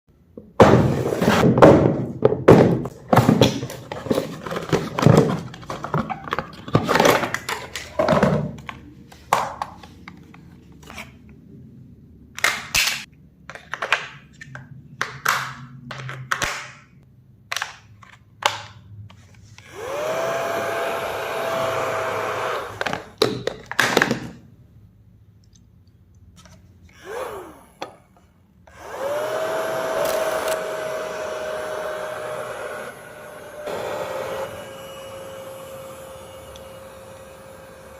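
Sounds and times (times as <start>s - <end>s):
toy motor whirring: 28.7s - 37.9s.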